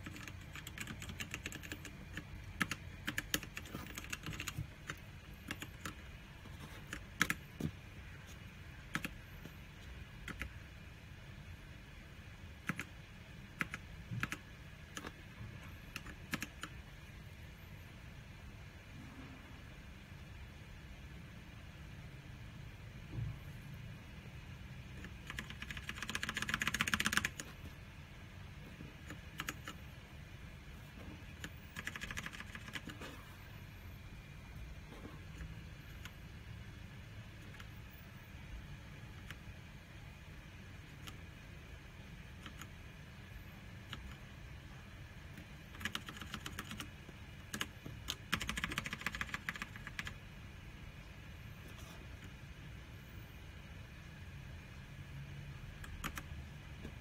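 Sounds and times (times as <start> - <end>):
mechanical keyboard typing: 0.0 - 6.1, 6.8 - 7.8, 8.8 - 9.2, 10.2 - 10.6, 12.6 - 13.0, 13.6 - 16.8, 24.9 - 27.6, 28.8 - 29.8, 31.1 - 33.2, 37.4 - 37.8, 40.8 - 41.2, 42.3 - 42.8, 43.9 - 44.2, 45.3 - 50.2, 55.8 - 56.3.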